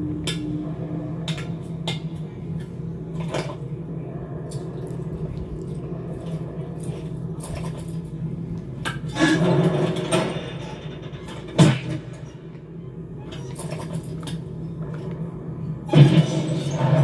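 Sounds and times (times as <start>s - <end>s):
low mechanical hum: 0.0s - 17.0s
rattling clatter: 9.0s - 12.5s.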